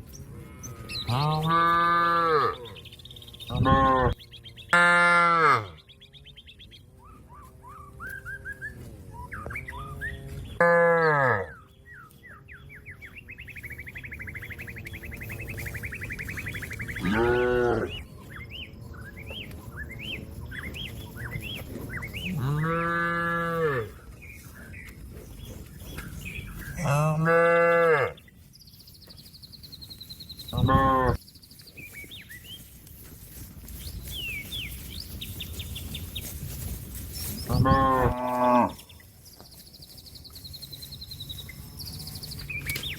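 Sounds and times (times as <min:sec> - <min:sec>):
birds chirping: 0:00.0 - 0:42.9
cow mooing: 0:00.2 - 0:05.8, 0:10.6 - 0:11.6, 0:16.9 - 0:18.0, 0:22.2 - 0:24.0, 0:26.8 - 0:28.2, 0:30.5 - 0:31.2, 0:37.5 - 0:38.8.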